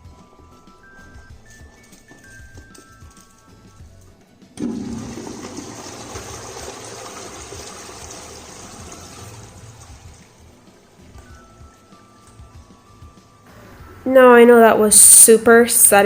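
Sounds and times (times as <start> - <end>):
toilet flushing: 4.6 - 11.0.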